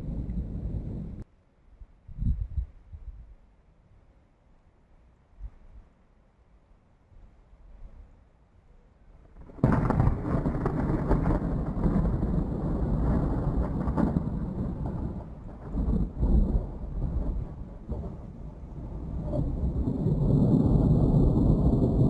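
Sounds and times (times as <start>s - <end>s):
thunder rumbling: 0.0s - 1.2s, 9.3s - 22.0s.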